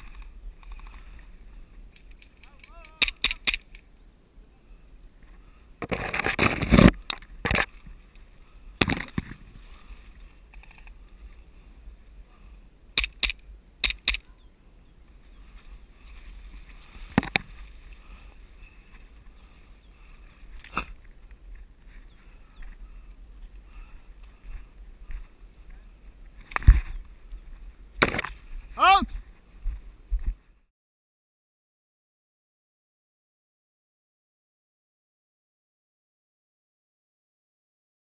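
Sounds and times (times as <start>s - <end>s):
sharp cracks and knocks: 2.0s - 3.8s, 8.8s - 9.4s, 13.0s - 14.2s, 28.0s - 28.4s.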